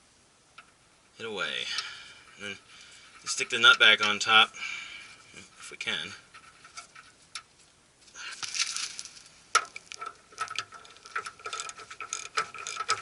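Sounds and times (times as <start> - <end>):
ratchet wrench clicking: 10.6 - 13.0.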